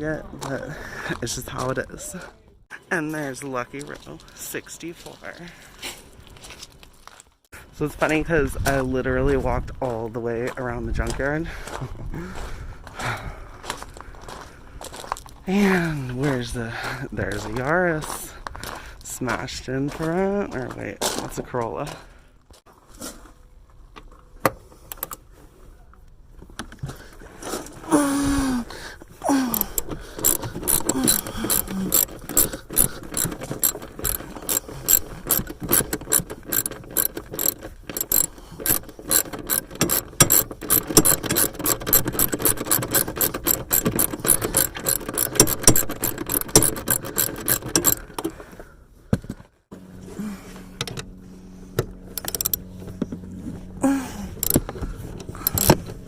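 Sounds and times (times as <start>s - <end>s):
ratchet wrench clicking: 24.9s - 25.2s, 29.5s - 48.2s, 52.1s - 52.6s, 54.4s - 54.6s, 55.4s - 55.8s.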